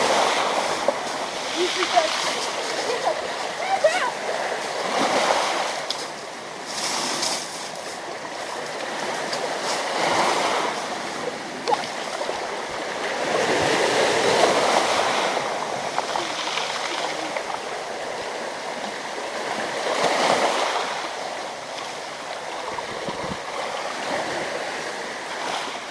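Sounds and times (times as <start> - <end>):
waves washing onto shore: 0.0 - 25.9.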